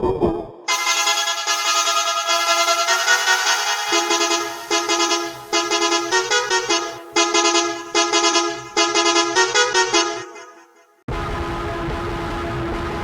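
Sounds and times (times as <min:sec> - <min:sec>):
stuttering bus horn honks: 0:00.7 - 0:10.8.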